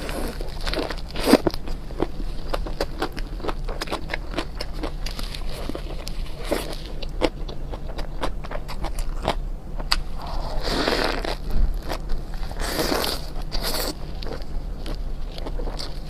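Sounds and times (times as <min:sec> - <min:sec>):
person slurping noodles: 0:10.1 - 0:11.4, 0:12.6 - 0:13.9.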